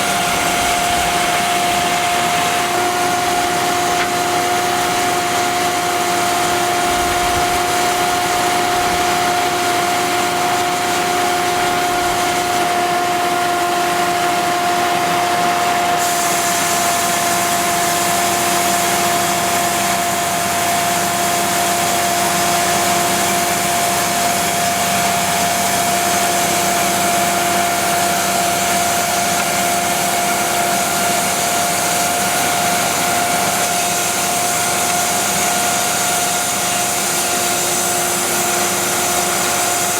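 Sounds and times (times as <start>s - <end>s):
bandsaw sawmill whine: 0.0s - 39.9s
machine hiss: 16.0s - 39.9s.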